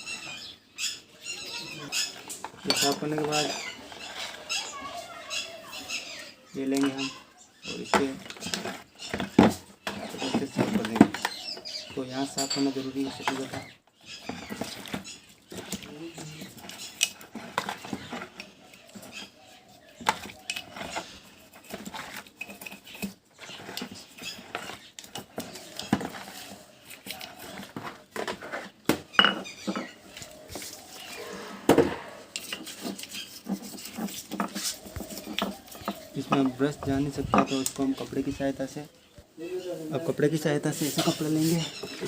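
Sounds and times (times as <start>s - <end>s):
brush scrubbing metal parts: 14.2s - 28.8s, 29.6s - 36.7s, 39.6s - 42.0s.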